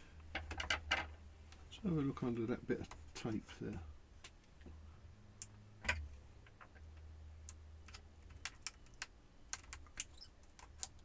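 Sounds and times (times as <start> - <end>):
clicks and taps of laptop parts: 5.8 - 11.0.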